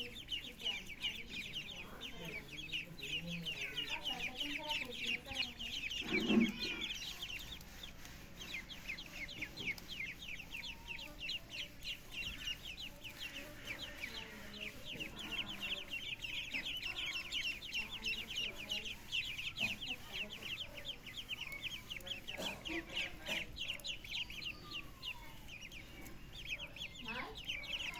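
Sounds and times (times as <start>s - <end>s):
chicks peeping: 0.0s - 27.9s.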